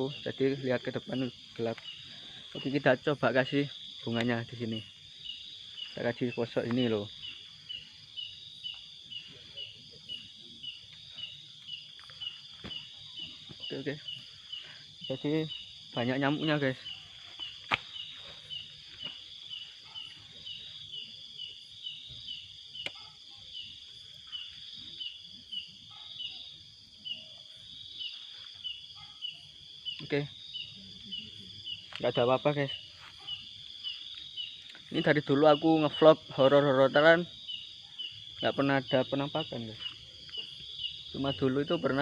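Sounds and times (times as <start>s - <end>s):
high insect drone: 0.0s - 42.0s
insect chirping: 0.0s - 42.0s.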